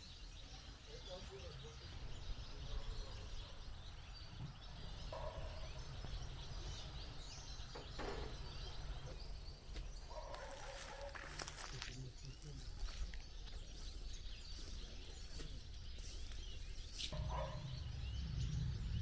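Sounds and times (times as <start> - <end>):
small birds chirping: 0.0 - 19.0
bird rattling call: 12.3 - 17.5.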